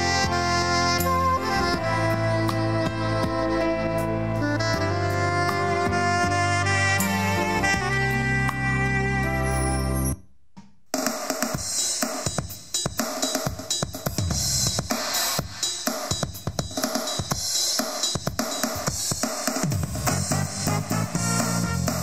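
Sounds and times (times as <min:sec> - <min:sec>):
drum-led music with cymbals: 0:00.0 - 0:22.0.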